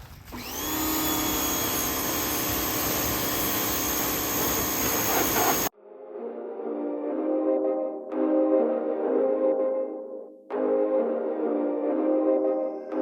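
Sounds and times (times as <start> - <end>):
pressure washer whine: 0.2 - 5.7
music: 5.7 - 13.0.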